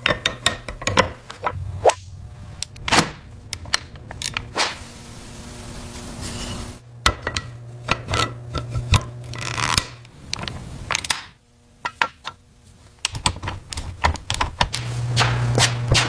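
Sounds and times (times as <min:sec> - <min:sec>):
small tools clicking and knocking: 0:00.0 - 0:01.6, 0:11.8 - 0:12.4
low steady hum: 0:00.0 - 0:15.3.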